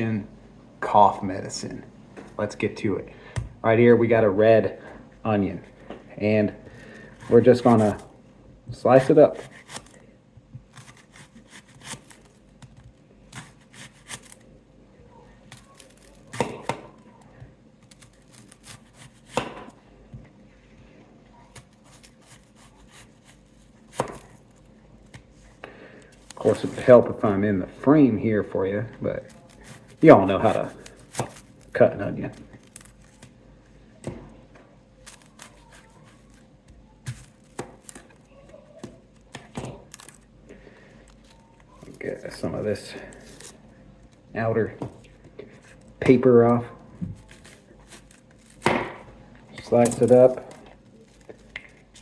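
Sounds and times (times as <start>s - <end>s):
knife slicing onion: 8.9s - 10.0s, 10.7s - 12.3s, 13.3s - 14.4s, 15.5s - 16.9s, 17.8s - 19.8s, 21.5s - 24.4s, 29.3s - 31.8s.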